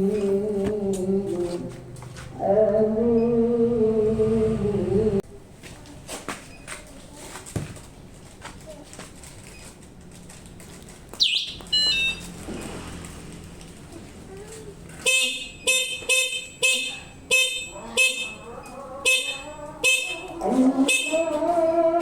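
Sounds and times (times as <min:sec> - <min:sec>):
electric horn beeping: 0:11.2 - 0:12.4, 0:15.0 - 0:21.4.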